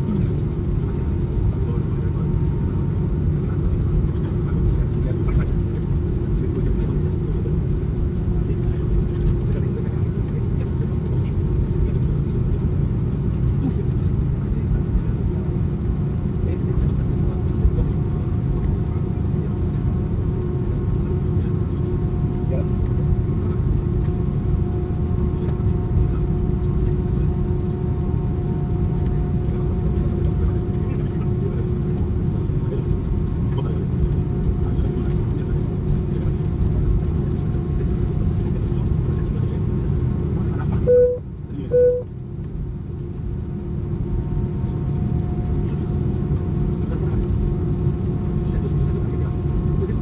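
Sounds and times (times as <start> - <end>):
jet engine cabin rumble: 0.0 - 50.0
short electronic beep: 40.9 - 42.1.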